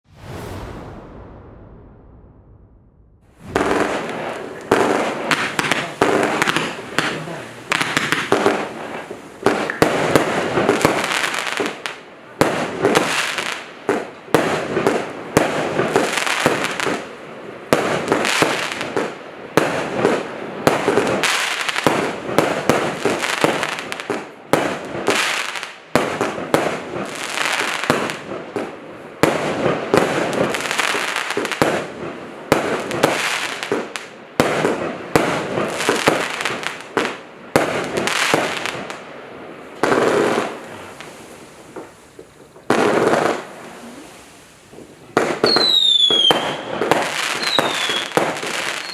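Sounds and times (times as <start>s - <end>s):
firework shots banging: 3.3s - 11.8s, 45.2s - 48.9s.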